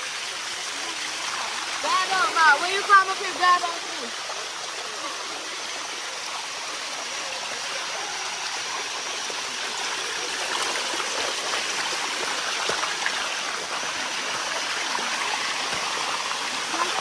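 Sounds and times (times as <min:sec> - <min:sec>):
water cascading over rocks: 0:00.0 - 0:17.0
small water splashes: 0:00.7 - 0:17.0.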